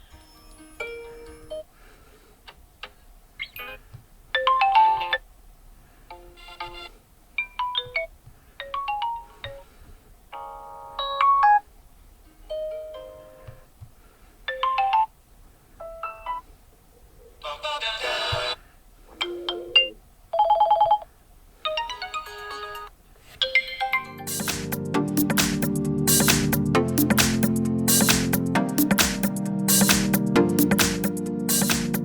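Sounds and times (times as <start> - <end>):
phone ringtone melodies: 4.4 - 5.2, 19.2 - 21.0, 21.7 - 30.7.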